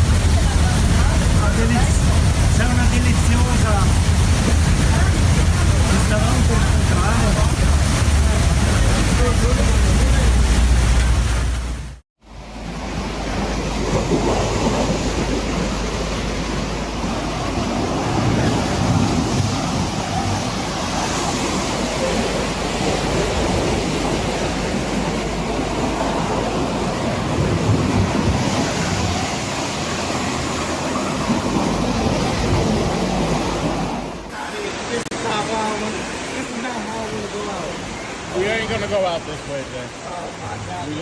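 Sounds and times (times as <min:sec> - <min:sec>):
breaking waves: 0:00.0 - 0:41.0
wind: 0:00.0 - 0:41.0
wind buffeting microphone: 0:13.2 - 0:34.3.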